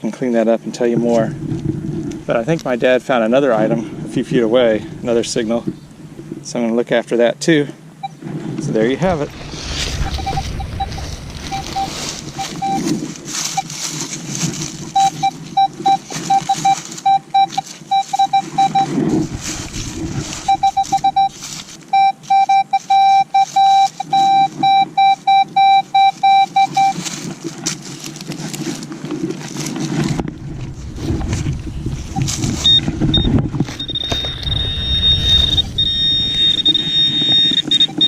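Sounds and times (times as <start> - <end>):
scraping and rustling of digging: 8.2 - 38.0
metal detector beeping: 10.0 - 14.0, 14.9 - 27.1, 32.1 - 38.0.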